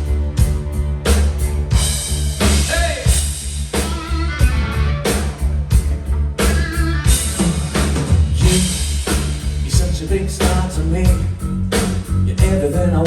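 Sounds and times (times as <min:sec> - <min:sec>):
pop-rock song: 0:00.0 - 0:13.0
singer calling out: 0:02.6 - 0:03.2.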